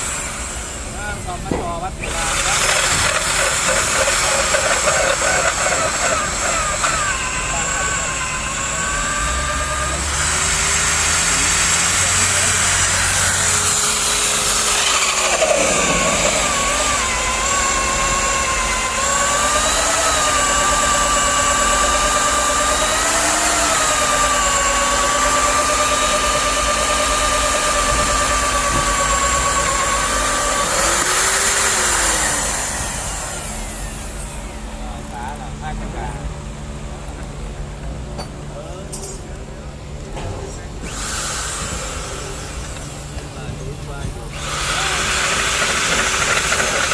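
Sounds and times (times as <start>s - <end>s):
hissing cutting noise: 0.0s - 34.2s, 44.3s - 46.9s
drill motor whining: 0.0s - 35.7s, 40.8s - 46.9s.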